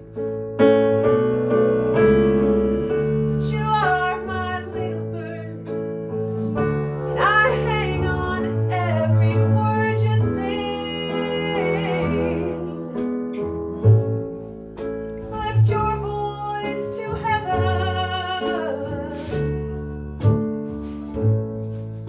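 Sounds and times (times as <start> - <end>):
bass notes: 0.0 - 22.0
woman singing: 3.3 - 14.2, 15.2 - 19.6.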